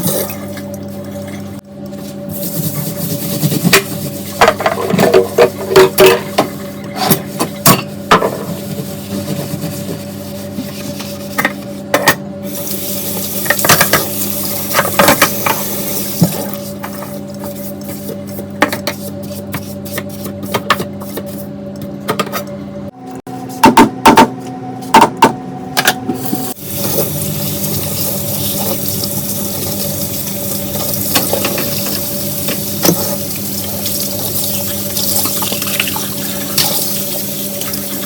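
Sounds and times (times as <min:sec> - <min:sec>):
steady hum: 0:00.0 - 0:38.0.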